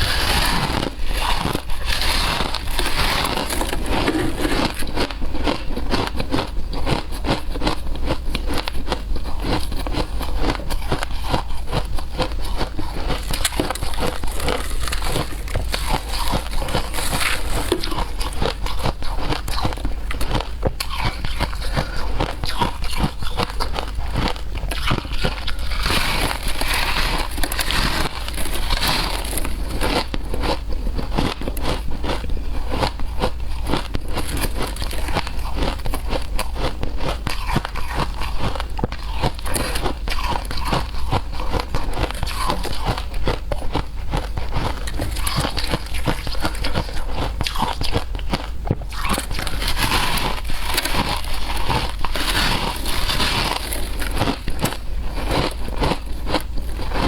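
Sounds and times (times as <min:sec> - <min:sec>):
shaved ice being chewed: 0:00.0 - 0:57.0.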